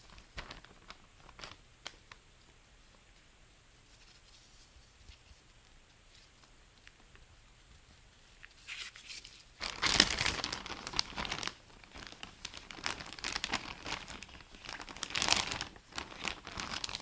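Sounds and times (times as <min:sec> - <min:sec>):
rustling and crinkling handling noise: 0:00.0 - 0:17.0.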